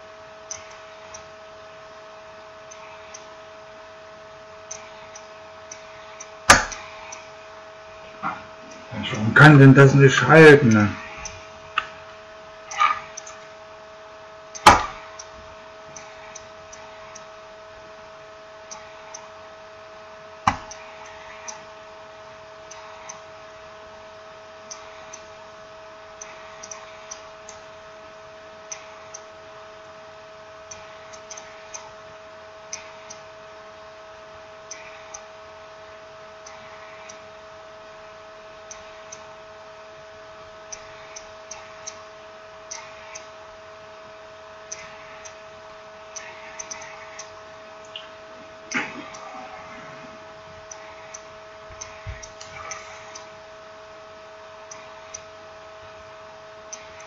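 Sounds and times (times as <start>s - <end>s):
two-tone electrical hum: 0.0s - 57.0s
sharp knocks: 14.6s - 15.0s.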